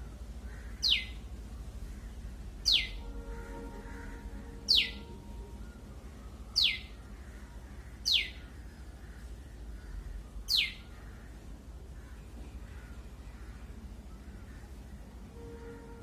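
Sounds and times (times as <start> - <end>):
small bird high-pitched calls: 0.4 - 14.9.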